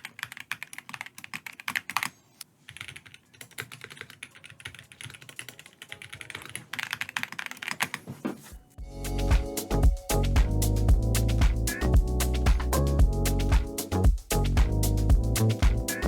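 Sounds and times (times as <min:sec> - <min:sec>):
fast typing on mechanical keyboard: 0:00.0 - 0:08.1.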